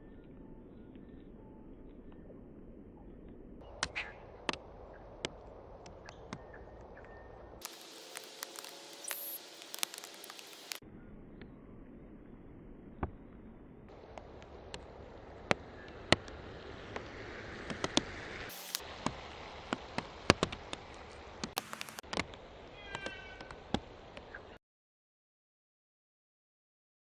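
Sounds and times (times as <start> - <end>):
birds ticking and tapping: 0.0 - 10.8, 13.9 - 24.6
short falling bird chirps: 22.7 - 23.6.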